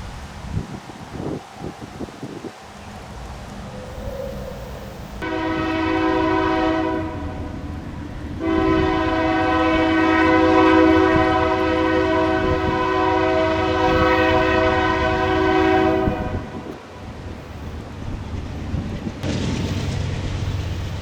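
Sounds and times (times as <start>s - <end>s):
low rumble of train: 0.0s - 21.0s
locomotive air horn chord: 5.2s - 16.8s.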